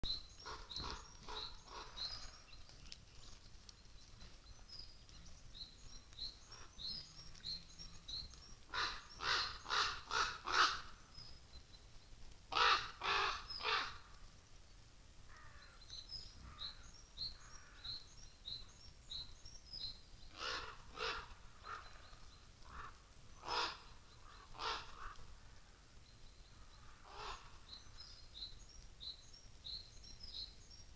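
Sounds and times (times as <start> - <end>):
songbirds chirping: 0.0 - 30.9
crows cawing: 8.7 - 10.9, 12.5 - 14.1, 15.3 - 15.8, 20.4 - 22.0, 22.7 - 25.6, 26.8 - 27.6.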